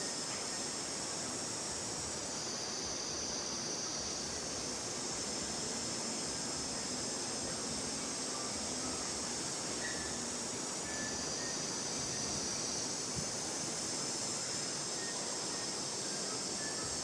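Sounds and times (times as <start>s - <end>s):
high-pitched hiss: 0.0s - 17.0s.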